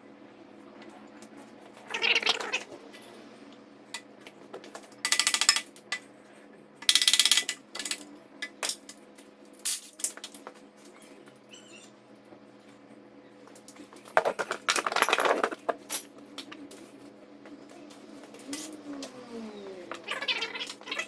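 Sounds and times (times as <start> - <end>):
metallic clinks of tools and bolts: 5.0 - 5.8
rapid ratchet clicking: 5.1 - 5.7, 6.8 - 8.0.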